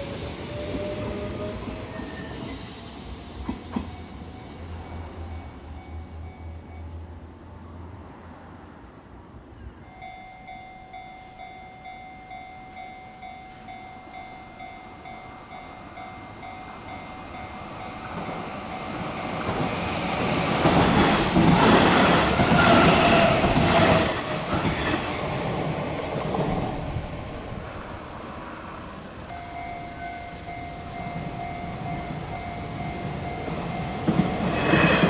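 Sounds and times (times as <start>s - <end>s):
electric train passing: 0.0s - 35.0s
train wheels clattering on rails: 3.2s - 4.6s, 16.8s - 26.7s, 31.2s - 35.0s
level-crossing alarm dinging: 9.8s - 24.4s, 29.3s - 35.0s.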